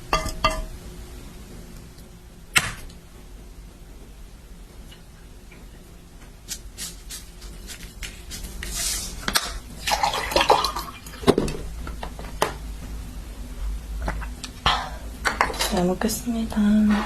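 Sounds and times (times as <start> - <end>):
dishes clattering: 0.1 - 0.7, 14.1 - 15.9
liquid pouring: 9.8 - 11.2
dishes and utensils clicking: 14.8 - 15.9.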